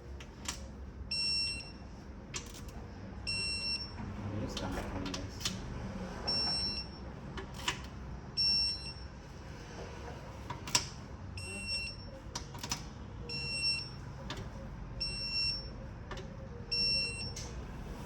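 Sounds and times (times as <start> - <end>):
torque wrench beeping: 16.7 - 17.4.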